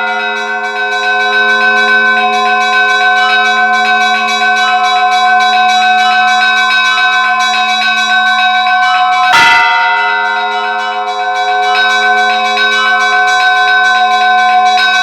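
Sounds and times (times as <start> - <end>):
hum of large bells: 0.0 - 15.0
small bells struck quickly: 0.0 - 15.0
heavy bell stroke: 9.3 - 12.6.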